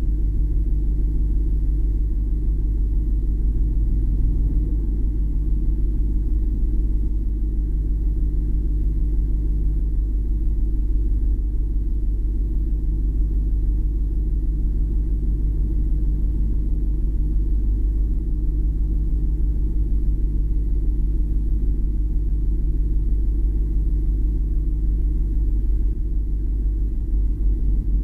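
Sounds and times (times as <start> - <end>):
low rumble of car driving: 3.0 - 10.8.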